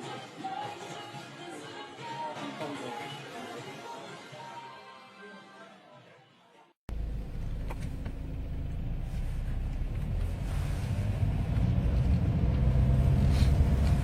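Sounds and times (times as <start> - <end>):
vehicle rumble inside moving car: 6.9 - 14.0.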